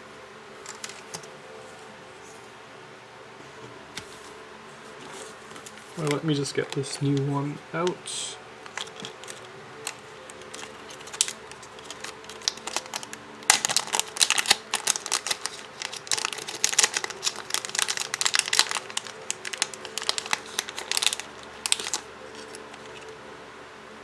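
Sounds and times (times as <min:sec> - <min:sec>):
plastic packaging crinkling: 0:05.3 - 0:07.3, 0:08.6 - 0:23.2.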